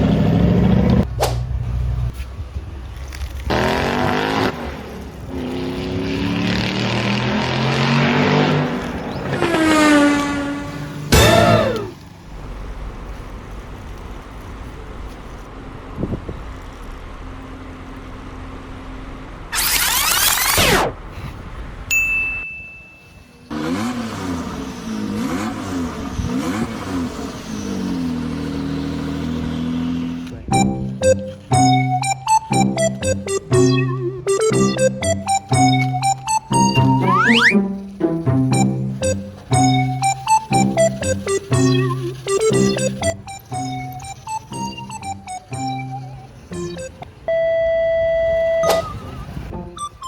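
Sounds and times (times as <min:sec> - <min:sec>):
car engine revving: 0:00.0 - 0:02.1, 0:03.5 - 0:12.9, 0:23.5 - 0:47.2
single ding: 0:21.9 - 0:23.3, 0:48.6 - 0:49.1.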